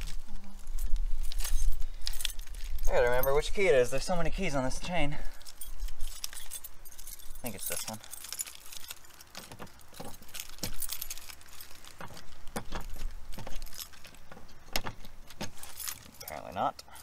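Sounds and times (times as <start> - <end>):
keys jangling on a key ring: 5.3 - 14.2, 15.6 - 17.0
key tried in a lock: 5.4 - 17.0.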